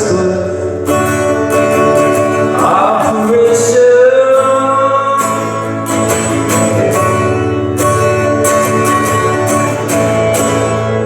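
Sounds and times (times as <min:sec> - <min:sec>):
plucked strings: 0:00.0 - 0:11.0.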